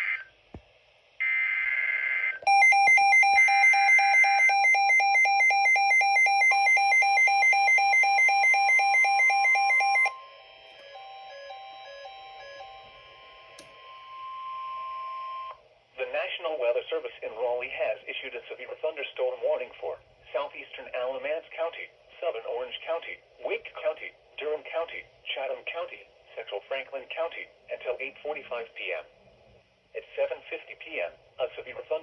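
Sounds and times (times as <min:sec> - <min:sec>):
pulsing beep alarm: 0:02.5 - 0:15.6.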